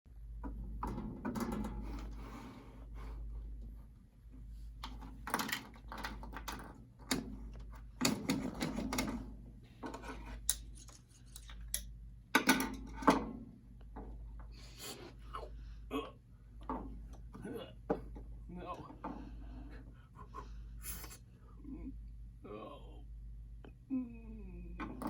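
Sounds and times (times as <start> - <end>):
steady low hum: 0.1 - 25.0
props knocking tapping and scraping: 4.8 - 11.8, 16.6 - 19.5.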